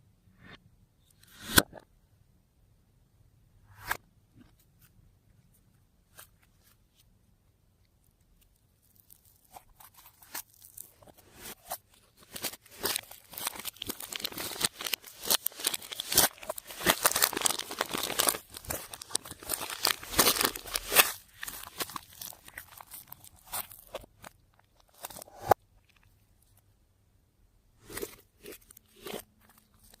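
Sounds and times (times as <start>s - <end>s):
slime crackling and popping: 12.5s - 24.2s.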